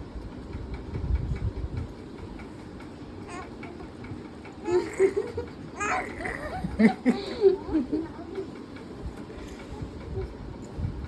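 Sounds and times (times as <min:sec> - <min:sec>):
baby cooing: 0:03.3 - 0:03.8, 0:04.6 - 0:06.6.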